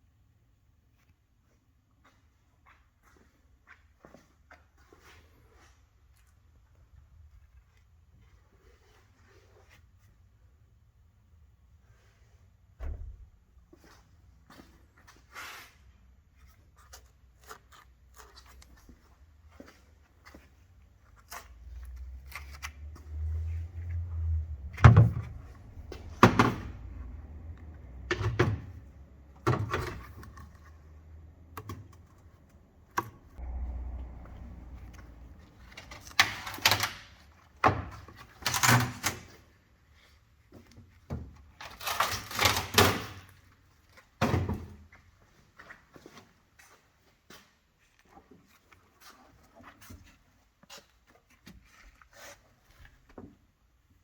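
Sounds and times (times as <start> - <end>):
low rumble: 33.4 - 35.4.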